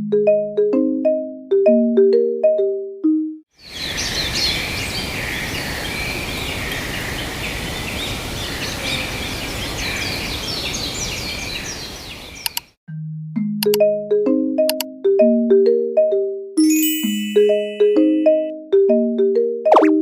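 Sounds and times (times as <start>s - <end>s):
songbirds chirping and singing: 3.6s - 12.8s.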